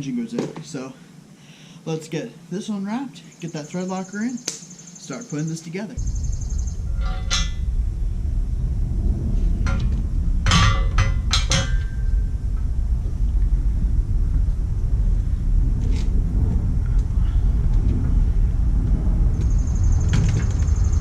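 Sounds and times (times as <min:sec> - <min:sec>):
low rumble: 0:06.0 - 0:21.0.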